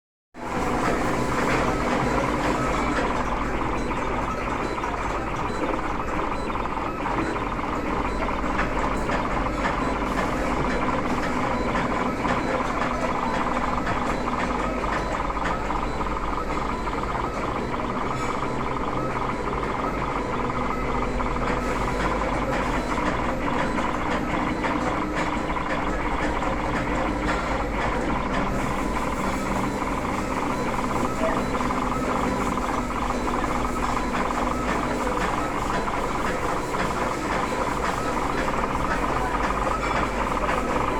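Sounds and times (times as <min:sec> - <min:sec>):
low motor tone: 0:00.4 - 0:40.9
machine whirring: 0:00.4 - 0:40.9
rapid machine clicking: 0:00.4 - 0:40.9.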